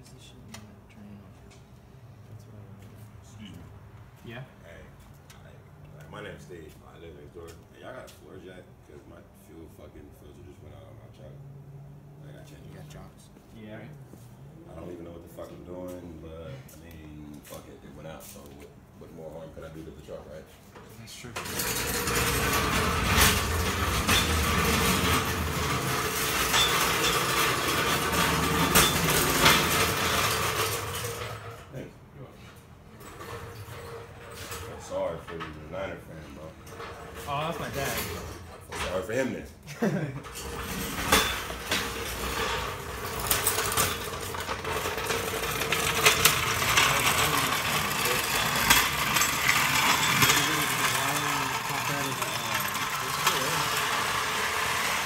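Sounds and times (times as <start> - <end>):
floor jack rolling on concrete: 19.2 - 31.8, 32.4 - 55.0.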